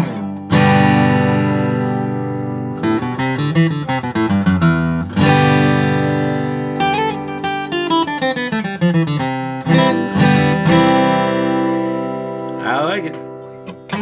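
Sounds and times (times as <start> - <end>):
acoustic guitar picking: 0.0 - 14.0.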